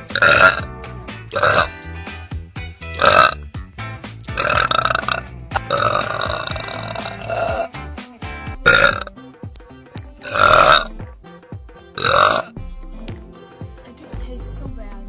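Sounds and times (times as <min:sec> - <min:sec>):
girl burping loudly: 0:00.0 - 0:00.7, 0:01.3 - 0:01.7, 0:03.0 - 0:03.4, 0:04.4 - 0:07.7, 0:08.6 - 0:09.1, 0:10.2 - 0:10.9, 0:12.0 - 0:12.5
background music: 0:00.0 - 0:15.0.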